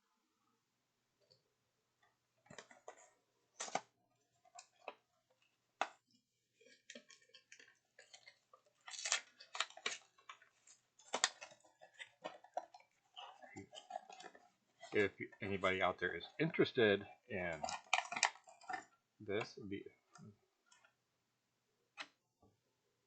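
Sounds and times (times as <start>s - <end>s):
packaging crinkling: 2.4s - 18.9s.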